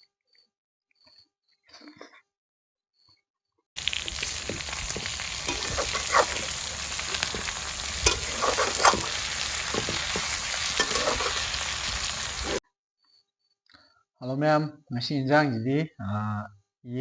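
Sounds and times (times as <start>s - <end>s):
food sizzling in hot oil: 3.8s - 12.6s
oil popping: 3.8s - 12.6s.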